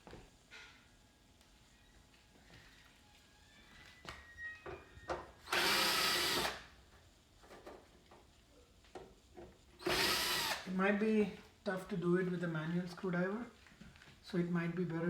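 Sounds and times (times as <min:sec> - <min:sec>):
electric screwdriver whirring: 0:05.5 - 0:06.7, 0:09.8 - 0:10.7.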